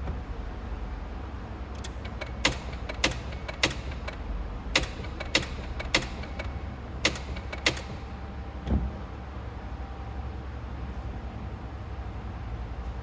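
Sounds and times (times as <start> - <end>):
car starter clicking: 1.7 - 8.1.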